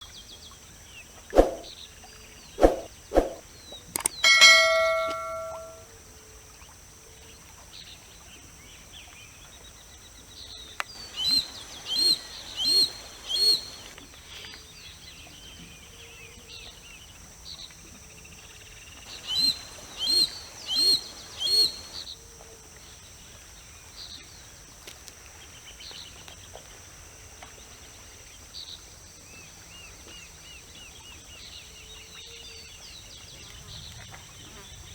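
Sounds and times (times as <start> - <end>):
loud metallic clang: 4.2 - 5.8
small birds chirping: 10.9 - 13.9, 19.0 - 22.0
hawk harsh rasping calls: 19.1 - 22.0.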